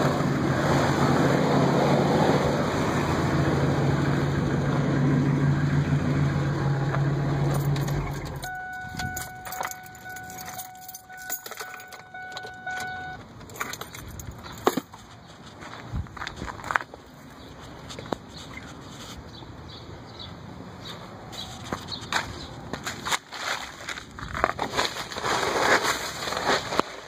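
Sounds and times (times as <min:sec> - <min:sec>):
truck engine running: 0:00.0 - 0:14.6
keys jangling: 0:07.5 - 0:15.0
steady warning tone: 0:07.6 - 0:13.2.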